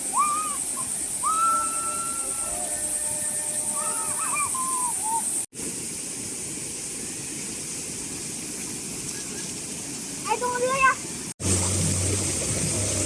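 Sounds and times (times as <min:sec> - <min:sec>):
constant high hiss: 0:00.0 - 0:13.0
whistled bird calls: 0:00.1 - 0:05.4.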